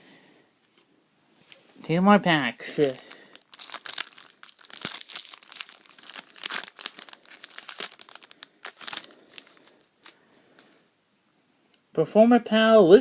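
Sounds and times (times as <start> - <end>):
foil wrapper tearing and crinkling: 2.4 - 10.2.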